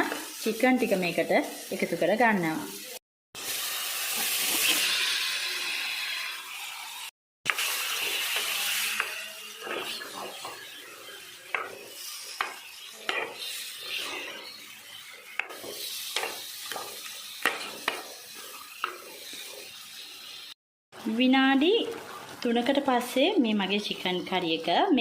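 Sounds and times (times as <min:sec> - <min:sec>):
chicken frying in oil: 0:00.0 - 0:23.0
spoon scraping a pot: 0:07.9 - 0:19.8.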